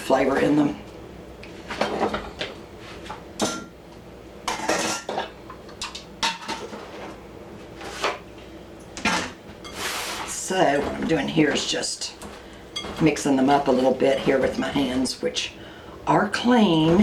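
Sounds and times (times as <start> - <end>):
dishes and utensils clattering: 4.5 - 7.1, 12.8 - 14.5.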